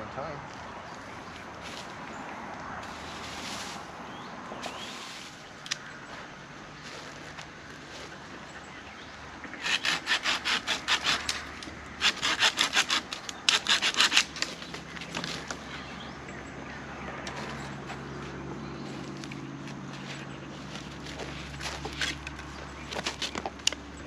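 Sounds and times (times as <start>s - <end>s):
hand saw cutting wood: 9.5s - 14.5s.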